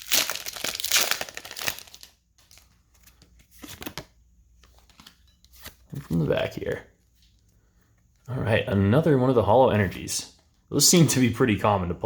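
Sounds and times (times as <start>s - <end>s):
foil wrapper crinkling and tearing: 0.0s - 2.8s.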